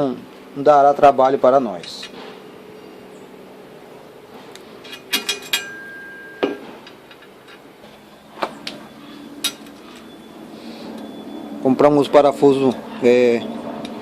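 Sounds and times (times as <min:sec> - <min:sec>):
faint steady hum: 0:00.0 - 0:14.0
metal hardware clicking: 0:04.8 - 0:07.6, 0:09.4 - 0:10.1.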